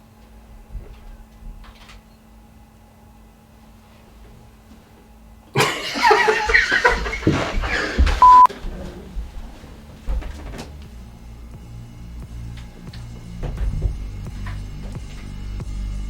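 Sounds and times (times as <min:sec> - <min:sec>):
person laughing and exclaiming: 0:05.6 - 0:08.2
censor bleep: 0:08.2 - 0:08.5.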